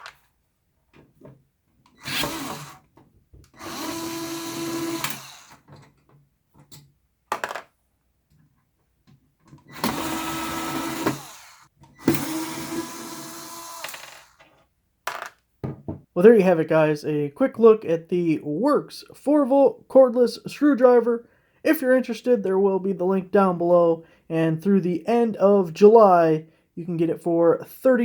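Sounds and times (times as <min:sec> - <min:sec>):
cordless screwdriver motor whine: 0:02.0 - 0:02.8, 0:03.6 - 0:05.6, 0:09.7 - 0:14.4.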